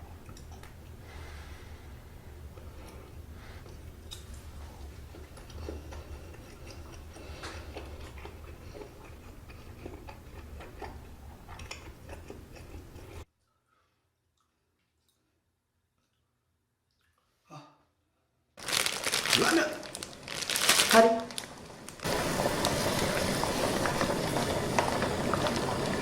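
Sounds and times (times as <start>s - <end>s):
chewing: 0.0s - 1.0s, 2.5s - 15.4s
steady low hum: 0.0s - 13.3s.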